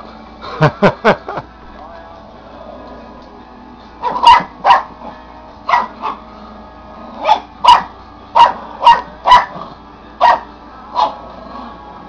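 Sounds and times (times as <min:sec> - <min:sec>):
puppy barking: 0:04.0 - 0:05.0, 0:05.7 - 0:06.2, 0:07.2 - 0:09.6, 0:10.2 - 0:11.2.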